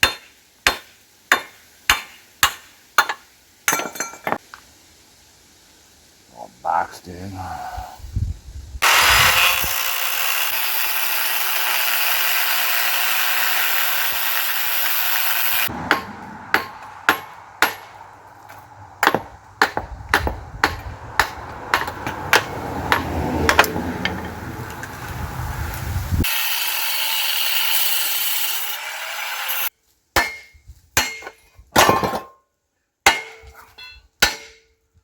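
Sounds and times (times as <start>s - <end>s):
angle grinder cutting steel: 8.8s - 15.7s, 26.2s - 29.7s
hammer striking metal: 15.8s - 18.0s, 19.0s - 24.3s, 33.1s - 34.7s.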